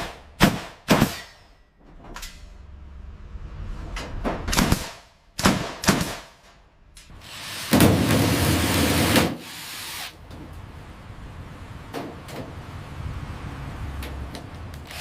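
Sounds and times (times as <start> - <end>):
sharp metallic clangs and knocks: 0.0 - 2.7
low hum: 1.4 - 5.4.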